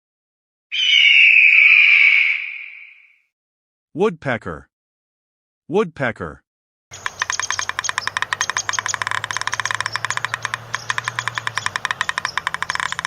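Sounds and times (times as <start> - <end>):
woodpecker drumming on wood: 6.9 - 13.0.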